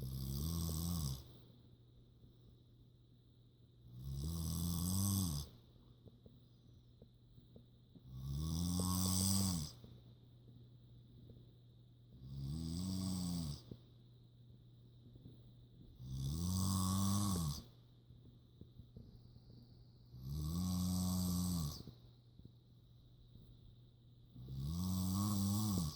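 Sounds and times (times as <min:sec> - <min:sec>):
woman snoring: 0:00.0 - 0:01.3, 0:03.9 - 0:05.6, 0:08.1 - 0:09.8, 0:12.2 - 0:13.8, 0:16.0 - 0:17.7, 0:20.1 - 0:21.9, 0:24.4 - 0:25.9.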